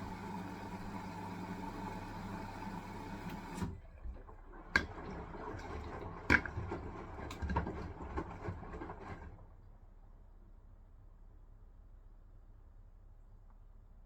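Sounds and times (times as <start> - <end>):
washing machine motor hum: 0.0 - 9.5.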